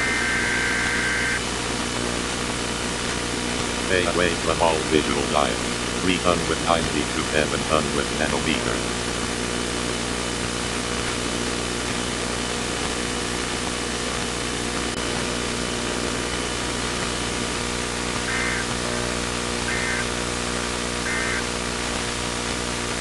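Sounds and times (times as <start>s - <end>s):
two-tone digital data bursts: 0.0s - 1.4s, 18.2s - 18.8s, 19.6s - 20.1s, 21.1s - 21.6s
steady hiss: 0.0s - 20.3s
hum drone: 0.0s - 23.0s.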